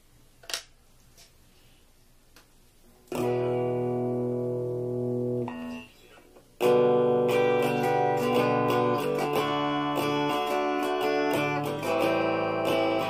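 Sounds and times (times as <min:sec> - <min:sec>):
clean electric guitar: 0:03.1 - 0:13.0.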